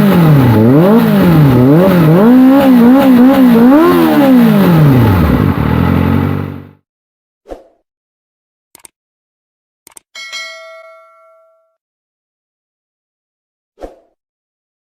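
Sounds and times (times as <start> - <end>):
motorcycle engine revving: 0.0 - 6.8.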